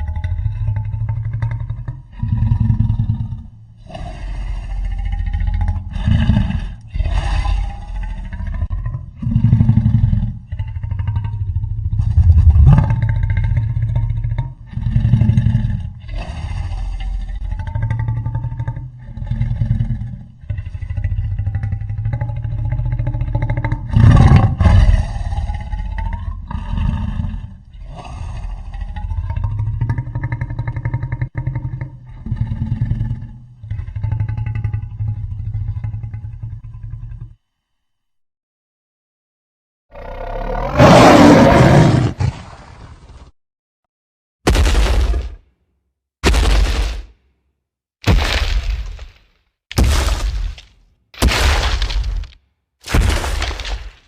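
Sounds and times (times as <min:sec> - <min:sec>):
deep pulsing dinosaur growls: 0:00.0 - 0:37.4, 0:39.9 - 0:42.2
deep rumbling monster roars: 0:00.0 - 0:37.4, 0:39.9 - 0:42.3.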